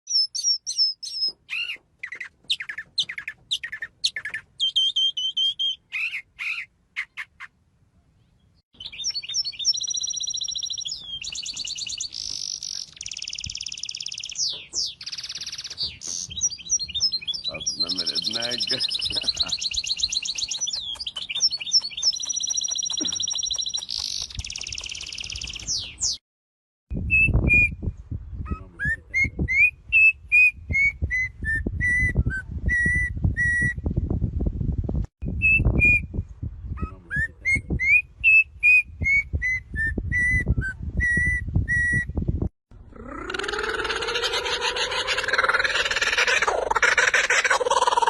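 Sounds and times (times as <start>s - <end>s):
bird trilling call: 0.1s - 7.5s, 8.8s - 26.2s, 43.1s - 48.0s
bird whistled song: 0.1s - 7.5s, 8.8s - 26.2s, 27.0s - 33.8s, 35.2s - 42.2s.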